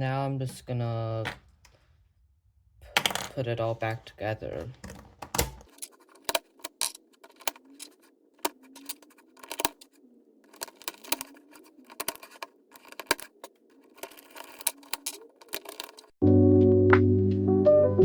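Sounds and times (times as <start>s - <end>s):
plastic puzzle cube pieces clicking: 5.6s - 9.9s, 10.5s - 16.2s.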